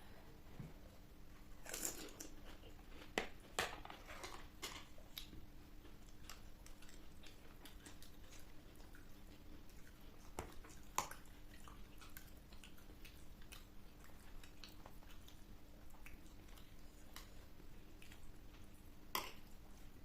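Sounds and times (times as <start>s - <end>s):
crunching crisp shells: 1.6s - 3.2s.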